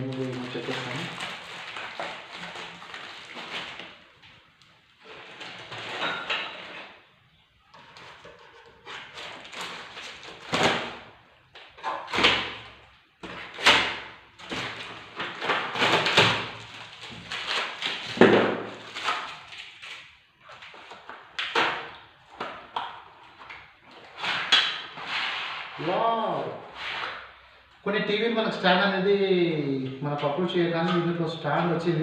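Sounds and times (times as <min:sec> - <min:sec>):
packaging scrapes and rustles: 0:00.0 - 0:04.4, 0:05.0 - 0:07.0, 0:07.8 - 0:10.6, 0:14.4 - 0:21.4, 0:23.1 - 0:26.0, 0:26.6 - 0:27.4.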